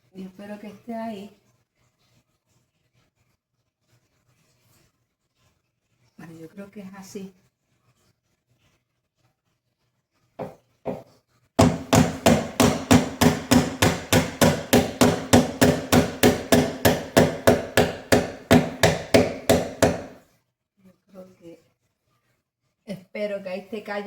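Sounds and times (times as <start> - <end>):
hammer striking metal: 11.6 - 20.2.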